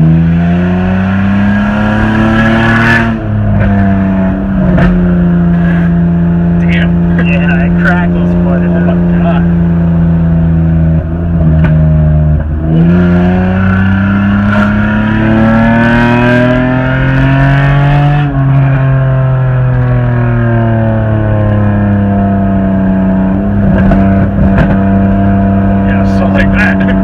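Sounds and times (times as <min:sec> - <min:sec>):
car engine accelerating: 0:00.0 - 0:27.0.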